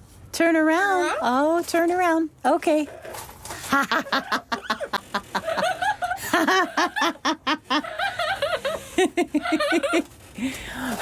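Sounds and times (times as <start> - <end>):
parrot laughing: 3.6 - 10.2.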